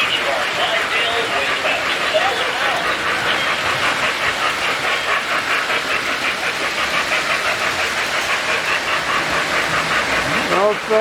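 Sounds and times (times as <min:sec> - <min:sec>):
model steam locomotive chuffing: 0:00.0 - 0:11.0.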